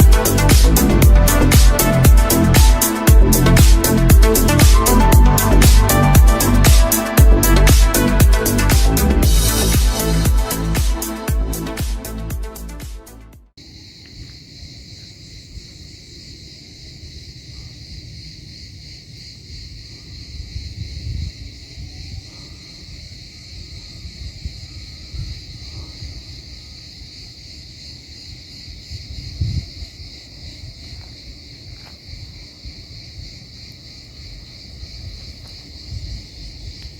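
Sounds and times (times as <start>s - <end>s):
insects chirring: 0.0s - 8.4s, 13.6s - 36.9s
wind buffeting microphone: 19.9s - 26.7s, 28.7s - 36.9s.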